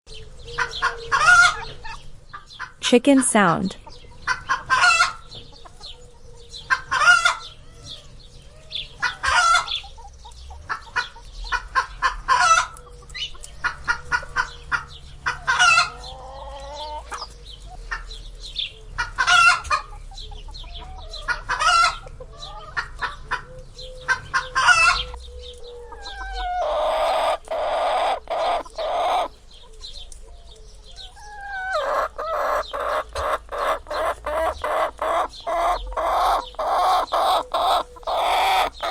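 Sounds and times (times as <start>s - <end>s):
chickens clucking: 0.1s - 38.9s
loud chicken call: 25.8s - 29.3s, 31.1s - 38.9s.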